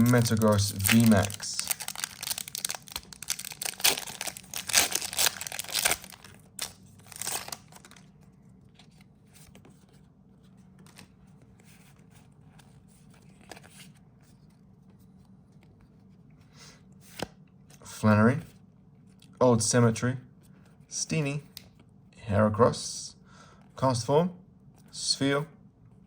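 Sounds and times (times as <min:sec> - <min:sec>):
foil wrapper tearing and crinkling: 0:00.0 - 0:08.1
cards being handled: 0:00.0 - 0:16.2, 0:17.0 - 0:17.8.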